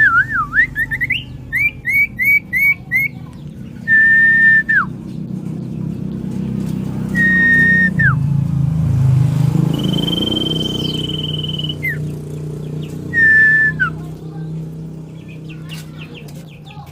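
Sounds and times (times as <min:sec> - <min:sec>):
bird singing long whistles: 0:00.0 - 0:03.1, 0:07.1 - 0:08.2, 0:09.7 - 0:12.1, 0:13.0 - 0:14.0.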